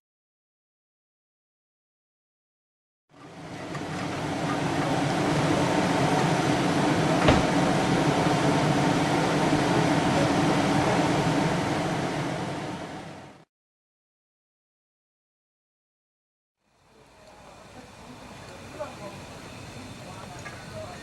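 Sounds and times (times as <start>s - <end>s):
miniature train rumbling and rattling: 3.2s - 11.9s, 16.9s - 21.0s.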